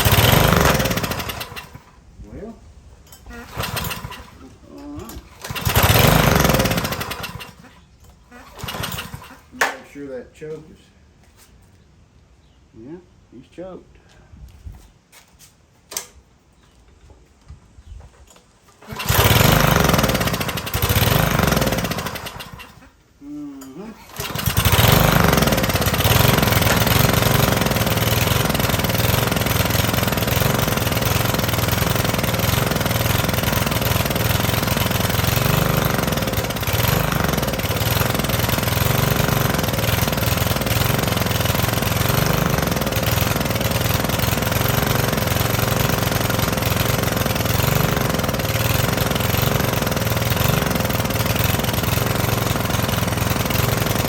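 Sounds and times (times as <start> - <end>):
edger engine running on choke: 0.0 - 2.0, 3.2 - 9.7, 18.7 - 23.0, 23.9 - 54.0.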